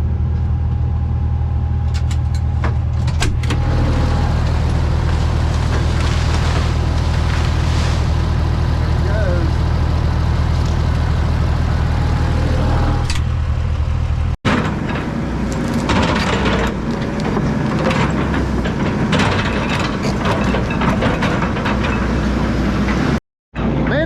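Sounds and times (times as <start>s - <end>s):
diesel heavy equipment engine: 0.0s - 24.0s
rock cracking and clattering: 4.4s - 7.8s.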